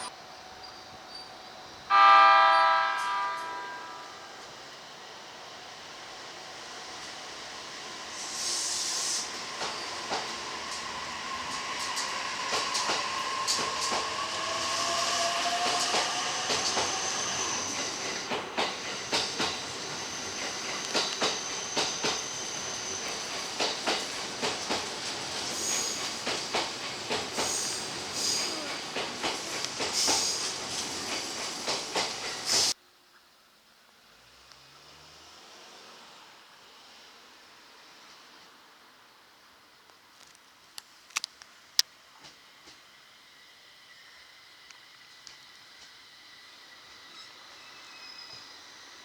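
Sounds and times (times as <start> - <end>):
train wheels clicking over rail joints: 8.2 - 32.8.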